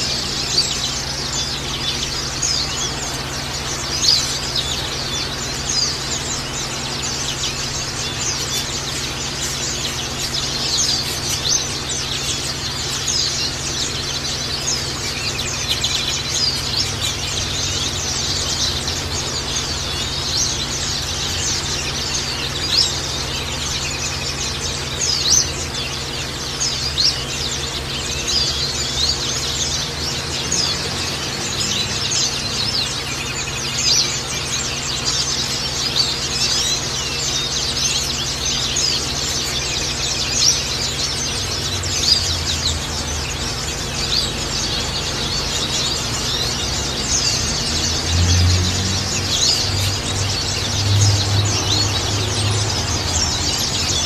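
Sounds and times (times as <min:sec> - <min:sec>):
birds chirping and twittering: 0:00.0 - 0:54.0.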